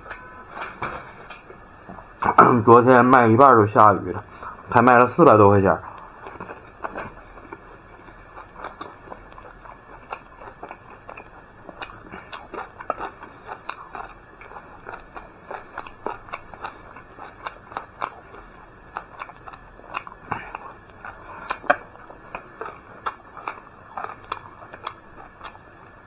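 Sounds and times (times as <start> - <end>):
person chewing and biting: 5.9 - 26.0.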